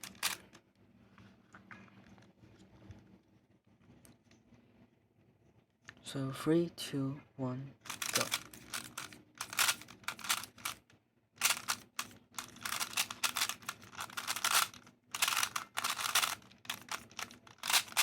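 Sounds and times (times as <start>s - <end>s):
puzzle cube plastic clicking: 0.0s - 0.5s, 7.9s - 10.8s, 11.4s - 18.0s.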